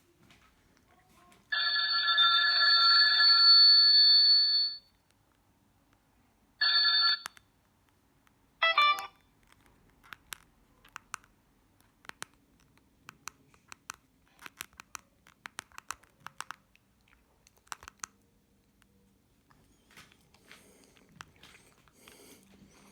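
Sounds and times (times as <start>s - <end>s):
mobile phone ringtone: 1.5s - 4.9s, 6.6s - 7.4s, 8.6s - 9.2s.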